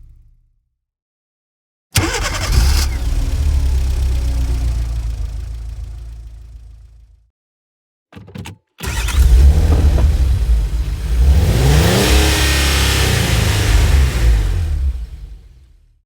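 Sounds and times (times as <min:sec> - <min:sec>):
car engine cranking: 0:02.0 - 0:03.3, 0:08.2 - 0:15.3.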